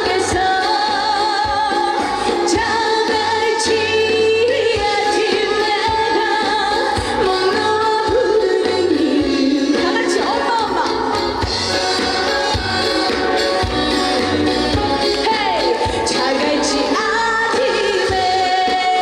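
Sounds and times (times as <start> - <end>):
pop music backing track: 0.0 - 19.0
woman singing: 0.0 - 19.0.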